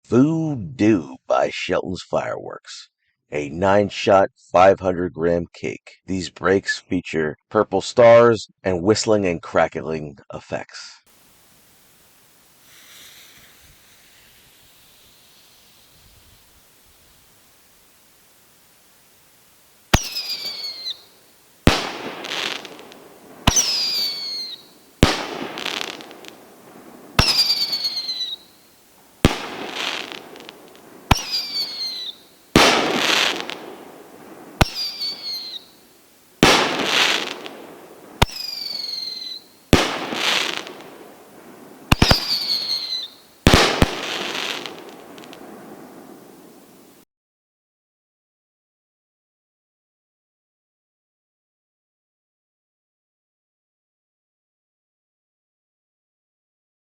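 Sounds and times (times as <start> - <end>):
firework crackling: 11.1 - 47.0
firework bangs: 11.2 - 18.6, 19.2 - 47.0
falling firework whistle: 12.6 - 16.8, 19.9 - 41.1, 41.8 - 47.0.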